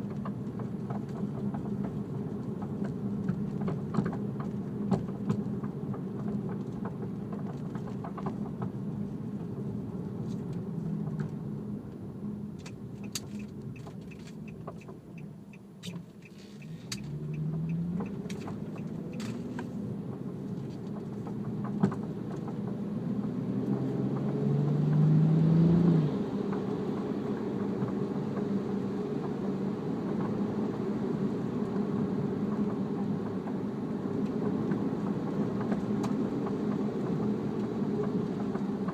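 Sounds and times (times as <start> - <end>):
car engine and road rumble: 0.0 - 38.9
engine revving: 16.7 - 19.7, 23.1 - 28.1.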